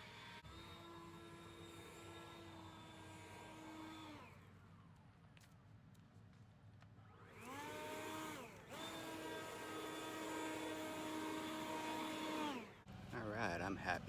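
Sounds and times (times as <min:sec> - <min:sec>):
electric leaf blower whining: 0:00.0 - 0:04.6, 0:07.2 - 0:13.1.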